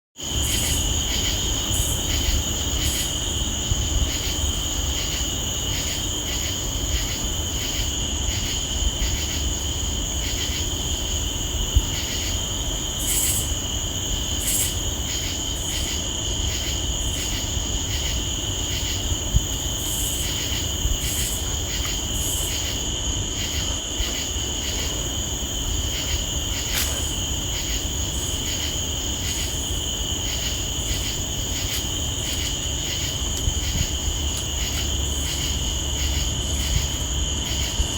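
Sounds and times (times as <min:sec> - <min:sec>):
crickets and night insects trilling: 0:00.2 - 0:37.9
low background rumble: 0:10.8 - 0:37.9.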